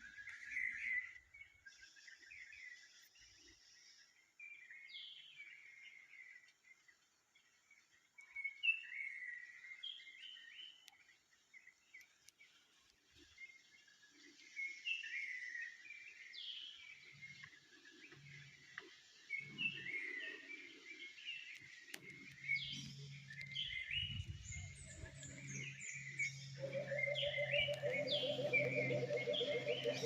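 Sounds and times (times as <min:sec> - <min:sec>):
small bird chirping: 0:21.3 - 0:30.0.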